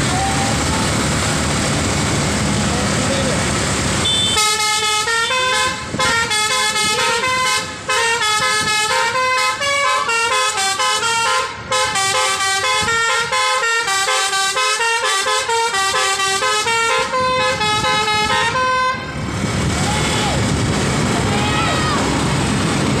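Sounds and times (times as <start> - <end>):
bus air horn melody: 4.0 - 19.2.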